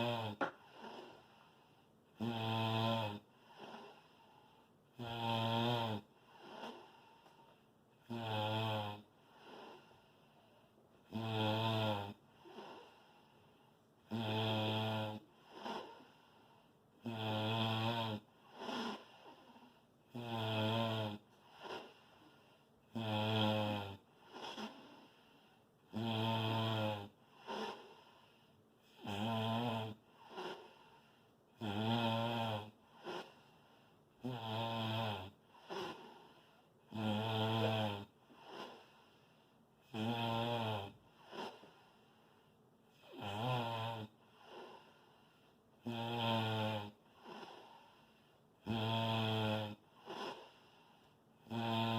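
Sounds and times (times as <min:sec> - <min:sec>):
loud buzzing snoring: 0:00.0 - 0:07.3, 0:08.0 - 0:10.1, 0:11.0 - 0:13.4, 0:14.0 - 0:33.6, 0:34.2 - 0:42.0, 0:42.9 - 0:51.9.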